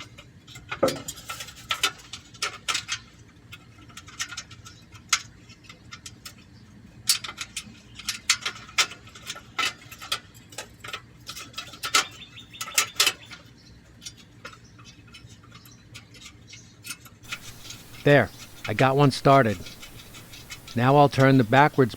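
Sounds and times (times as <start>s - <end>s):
metal heat shields clinking: 17.3s - 21.9s.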